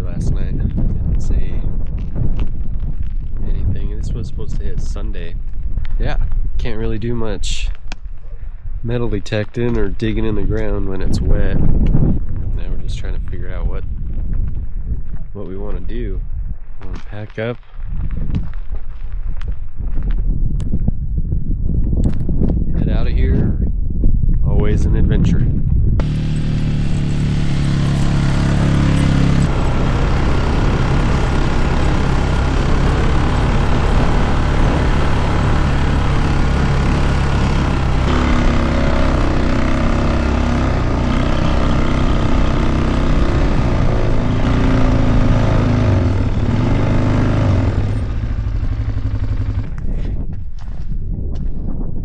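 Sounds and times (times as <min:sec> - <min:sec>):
vehicle engine running: 0:26.0 - 0:50.3.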